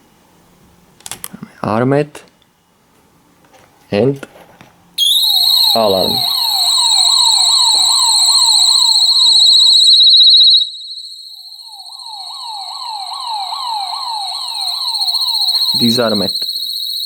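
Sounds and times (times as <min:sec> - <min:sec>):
shrill warbling alarm tone: 0:05.0 - 0:17.0
sweeping alarm siren: 0:05.0 - 0:17.0.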